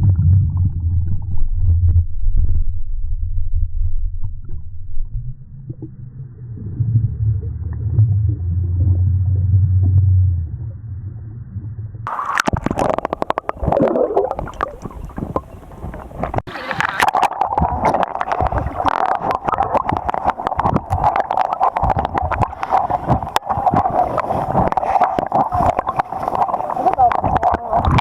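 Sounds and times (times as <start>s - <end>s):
muffled underwater rumbling: 0.0s - 28.0s
water splashing: 12.1s - 28.0s.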